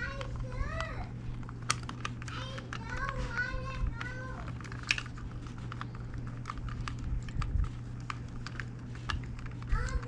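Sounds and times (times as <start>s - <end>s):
low hum: 0.0s - 10.0s.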